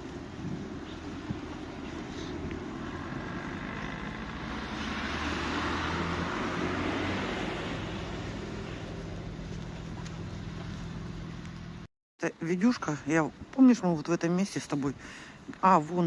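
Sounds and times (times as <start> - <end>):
car tyre noise passing: 0.0 - 11.8
low engine hum: 0.0 - 11.9.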